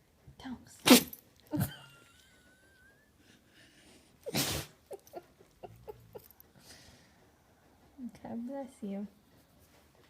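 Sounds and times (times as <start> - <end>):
dog sneezing: 0.8 - 1.2, 4.2 - 5.0.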